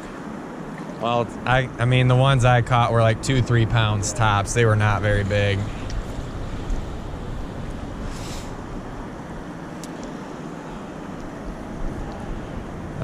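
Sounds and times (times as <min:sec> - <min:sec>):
wind on microphone: 0:02.4 - 0:09.6
brief hiss: 0:08.1 - 0:08.6.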